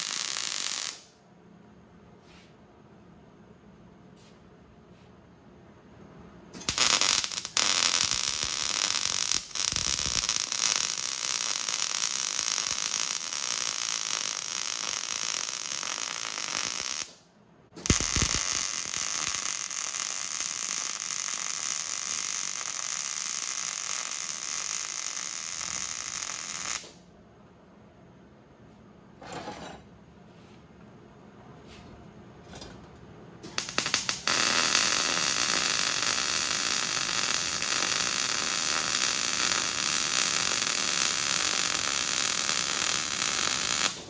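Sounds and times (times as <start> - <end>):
welding arc crackling: 0.0 - 1.1, 6.6 - 17.2, 17.8 - 27.0, 33.4 - 44.0.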